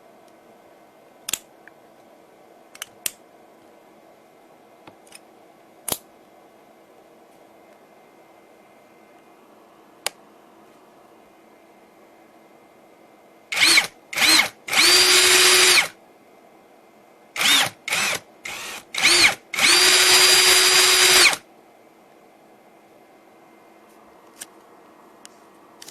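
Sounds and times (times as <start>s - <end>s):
cordless drill motor whine: 13.5s - 16.0s, 17.4s - 21.4s.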